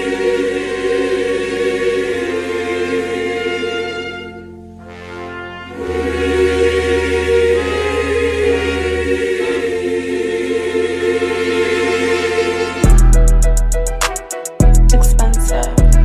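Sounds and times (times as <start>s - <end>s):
choir-like vocal chords: 0.0s - 16.0s
low bass note: 12.8s - 14.0s.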